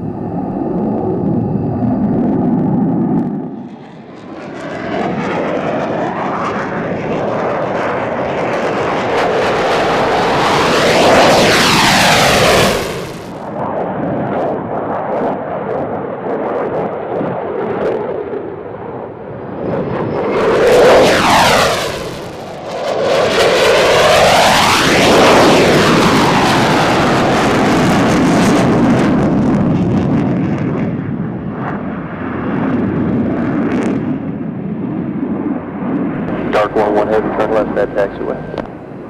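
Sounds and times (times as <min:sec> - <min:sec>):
jet engine roaring past: 0:00.0 - 0:39.0.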